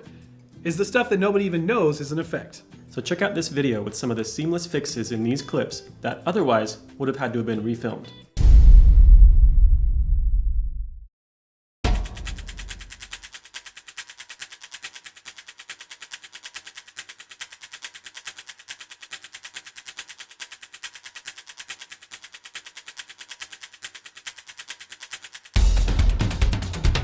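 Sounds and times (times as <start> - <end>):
single hit: 8.4 - 11.0
drum kit music: 11.8 - 13.1, 25.6 - 27.0
rapid even ticking: 11.9 - 25.9.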